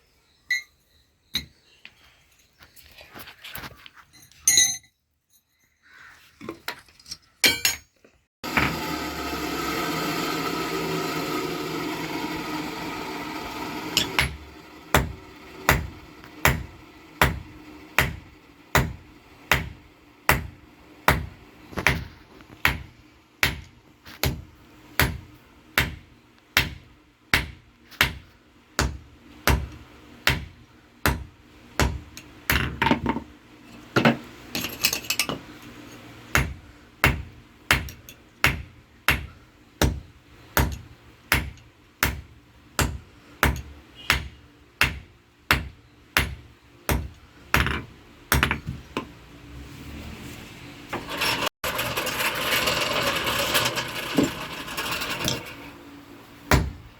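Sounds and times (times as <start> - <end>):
hammer striking metal on anvil: 14.0 - 18.2, 18.8 - 21.4.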